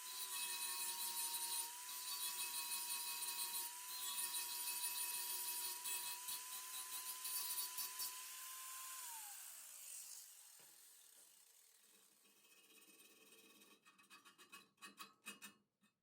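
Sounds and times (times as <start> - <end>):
power tool whining: 0.0 - 10.8.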